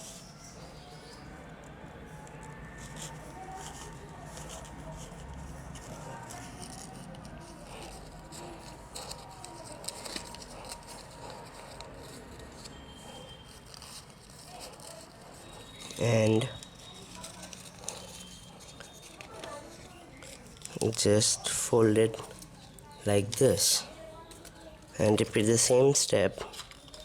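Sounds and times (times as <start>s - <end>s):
paper rustling and crinkling: 2.0s - 25.6s, 26.3s - 27.0s.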